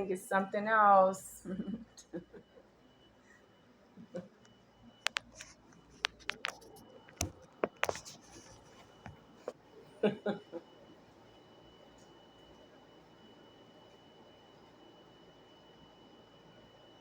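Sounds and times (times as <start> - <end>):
objects clicking and knocking: 5.1 - 8.2.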